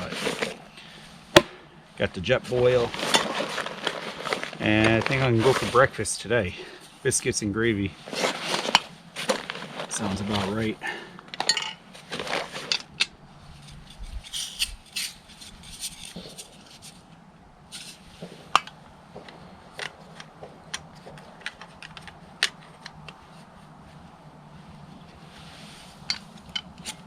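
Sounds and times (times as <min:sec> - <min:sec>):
short rustles: 0:11.9 - 0:19.4.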